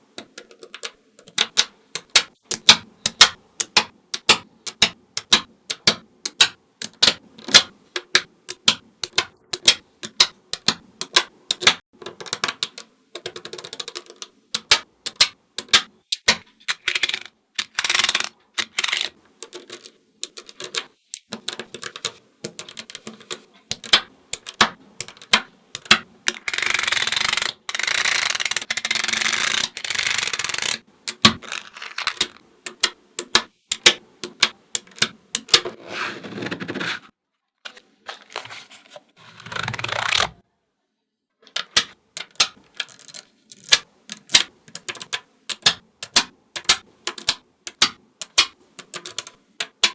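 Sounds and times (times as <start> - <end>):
magnetic balls clicking together: 0.2 - 35.6, 41.5 - 49.9
rattle of many balls: 24.5 - 32.4, 35.6 - 37.1.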